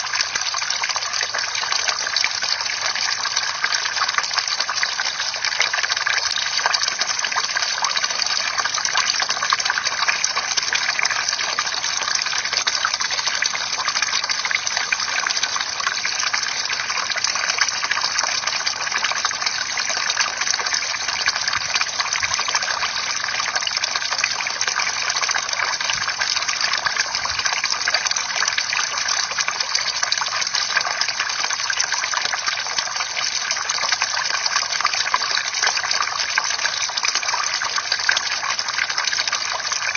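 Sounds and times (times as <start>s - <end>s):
bamboo fountain pouring water: 0.0s - 39.9s.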